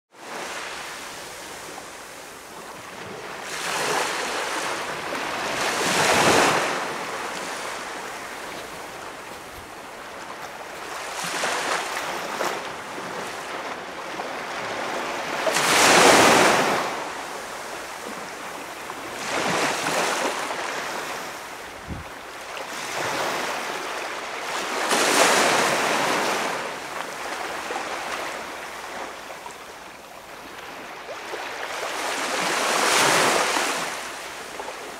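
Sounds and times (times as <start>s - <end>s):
small waves breaking on beach: 0.2s - 34.9s.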